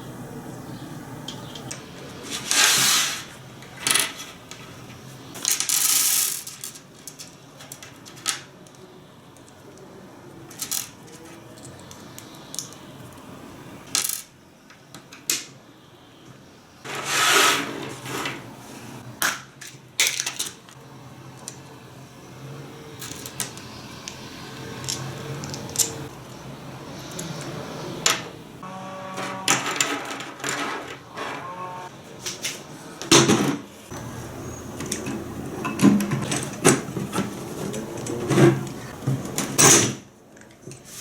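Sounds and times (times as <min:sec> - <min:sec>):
small metal parts clinking: 0:05.3 - 0:08.8, 0:10.5 - 0:13.2, 0:19.6 - 0:20.7, 0:22.9 - 0:26.1.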